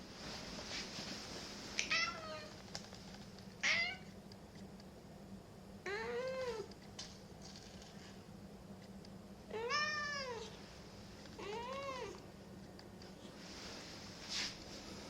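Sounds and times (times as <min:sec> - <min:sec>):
cat meowing: 0:03.6 - 0:04.0, 0:09.5 - 0:10.5, 0:11.4 - 0:12.2.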